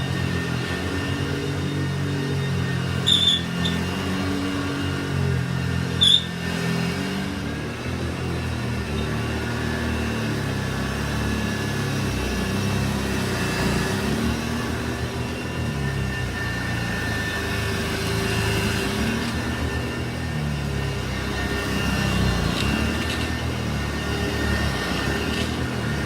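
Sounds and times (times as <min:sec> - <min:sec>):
vacuum cleaner motor humming: 0:00.0 - 0:26.0
wheels squeaking: 0:03.0 - 0:04.1, 0:05.9 - 0:06.5.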